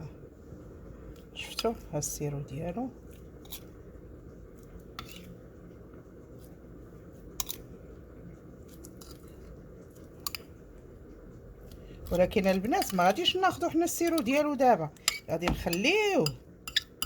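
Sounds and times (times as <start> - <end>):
faint room hum: 0.0 - 17.0
spoon clicking against bowl: 15.0 - 17.0.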